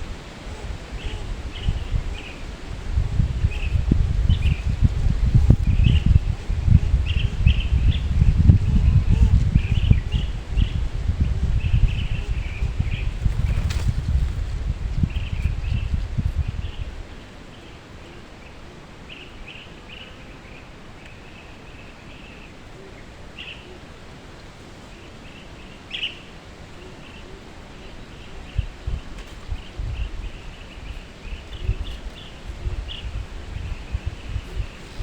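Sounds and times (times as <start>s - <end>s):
wind rumbling on microphone: 0.0s - 19.2s, 21.7s - 35.0s
small birds chirping: 0.0s - 23.8s, 24.8s - 35.0s.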